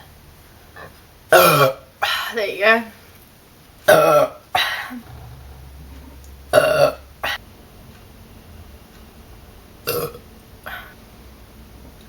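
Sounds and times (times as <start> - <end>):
person burping: 5.0 - 7.4, 9.9 - 10.2.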